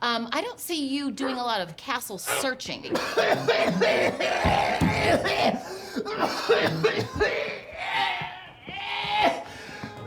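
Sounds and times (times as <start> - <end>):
man stifling coughs: 2.9 - 7.7.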